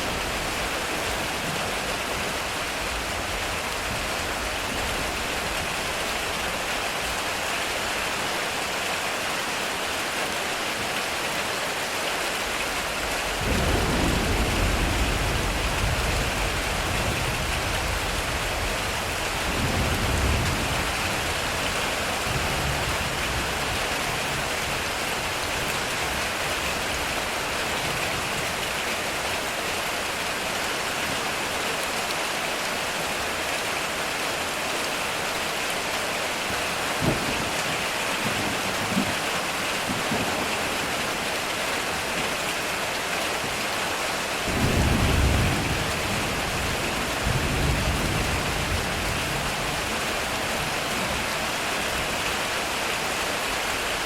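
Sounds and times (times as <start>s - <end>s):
heavy rain on metal roof: 0.0s - 54.0s
thunder rumbling: 13.2s - 21.6s
thunder crack: 13.4s - 16.6s.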